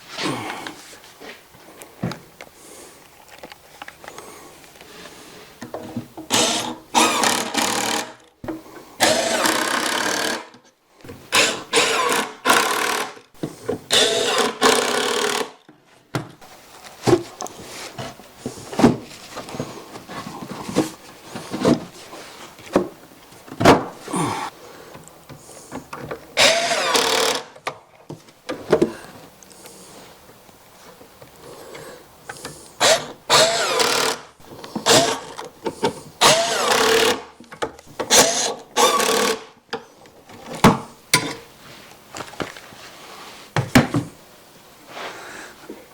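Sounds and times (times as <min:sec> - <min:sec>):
power driver driving screws: 0:06.3 - 0:08.2, 0:09.0 - 0:10.6, 0:11.3 - 0:13.2, 0:13.9 - 0:15.6, 0:26.4 - 0:27.6, 0:32.8 - 0:34.2, 0:34.8 - 0:35.4, 0:36.2 - 0:37.2, 0:38.1 - 0:39.5.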